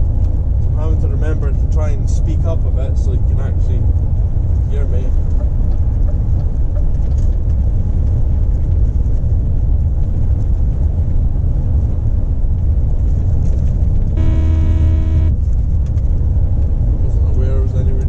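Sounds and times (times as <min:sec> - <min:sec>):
lorry engine and road noise: 0:00.0 - 0:18.0
steady pitched tone: 0:14.2 - 0:15.4.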